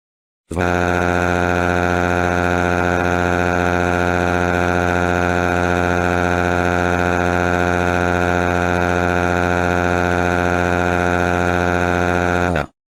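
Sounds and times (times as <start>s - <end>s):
loud buzzing drone: 0.5s - 12.8s.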